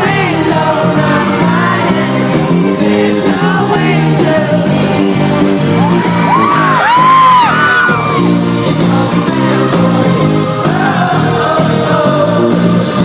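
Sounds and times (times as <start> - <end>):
loud live pop music: 0.0 - 13.0
high whoops: 5.8 - 8.3.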